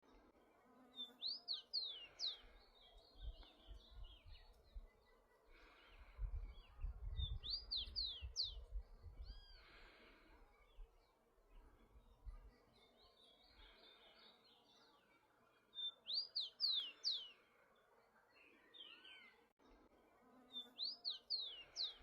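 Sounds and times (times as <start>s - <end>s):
soft bird chirps: 1.0s - 17.5s, 20.6s - 22.0s
sparrow whistling song: 6.9s - 9.6s, 15.8s - 17.3s.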